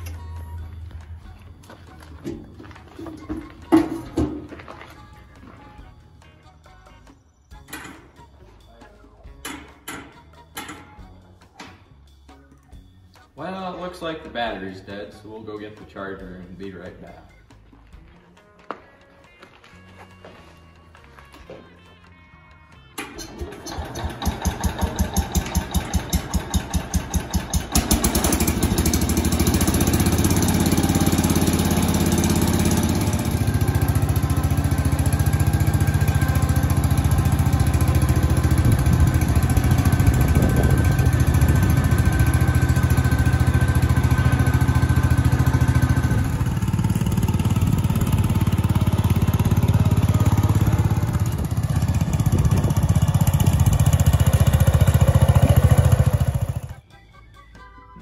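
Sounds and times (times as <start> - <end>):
starter cranking engine: 23.0 - 56.8
small engine running: 23.2 - 56.8.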